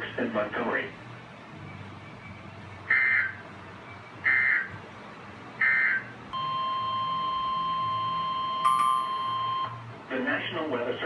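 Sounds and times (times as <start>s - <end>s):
steady single-pitch alarm tone: 5.6s - 9.9s.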